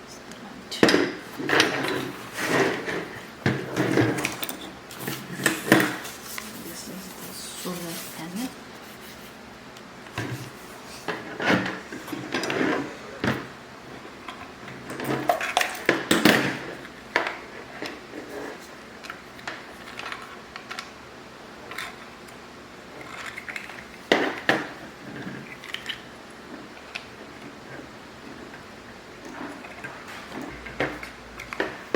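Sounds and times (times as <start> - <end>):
hard objects knocking and rattling: 0.8 - 6.8.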